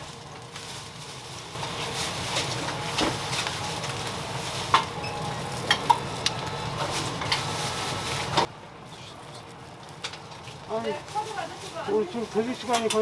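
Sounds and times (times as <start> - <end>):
food sizzling on a griddle: 0.0 - 13.0.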